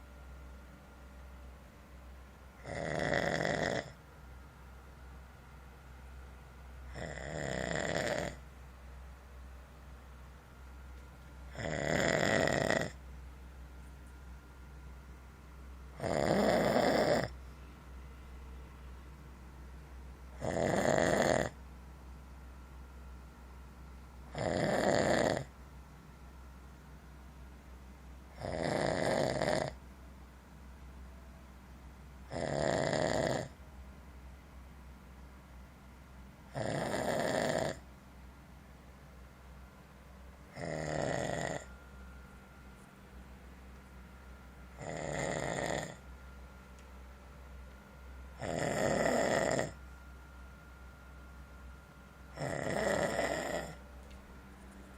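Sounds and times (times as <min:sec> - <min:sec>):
low steady hum: 0:00.0 - 0:32.6, 0:33.2 - 0:54.9
man snoring: 0:02.6 - 0:04.0, 0:06.9 - 0:08.4, 0:11.5 - 0:13.0, 0:16.0 - 0:17.4, 0:20.4 - 0:21.6, 0:24.3 - 0:25.5, 0:28.4 - 0:29.8, 0:32.3 - 0:33.6, 0:36.5 - 0:37.8, 0:40.5 - 0:41.7, 0:44.8 - 0:46.0, 0:48.4 - 0:49.8, 0:52.3 - 0:53.8.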